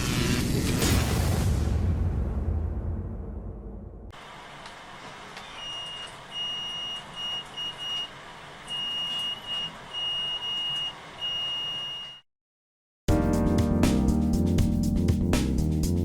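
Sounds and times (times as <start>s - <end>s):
alarm buzzer beeping: 5.5s - 8.1s, 8.7s - 12.2s.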